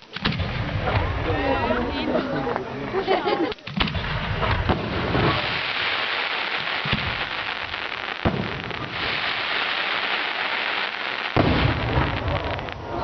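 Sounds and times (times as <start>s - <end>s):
fireworks bangs: 0.0s - 1.8s, 3.6s - 13.0s
fireworks crackling: 3.3s - 13.0s.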